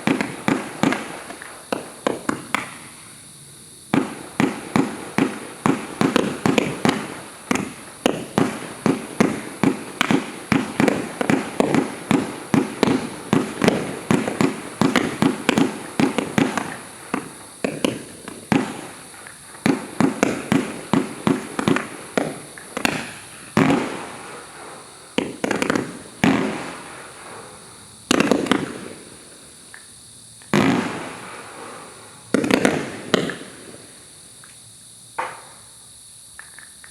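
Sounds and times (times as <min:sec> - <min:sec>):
firework shots firing: 0:00.0 - 0:03.0, 0:03.9 - 0:34.0.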